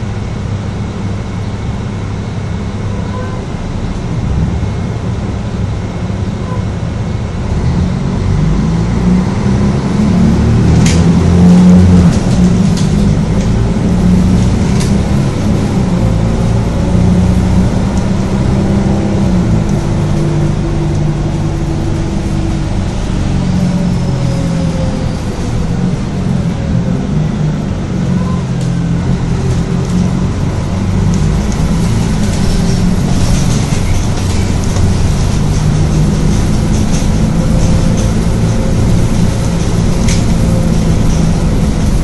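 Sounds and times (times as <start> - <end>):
bus diesel engine droning: 0.0 - 42.0
sharp knocks and rattles: 31.1 - 42.0.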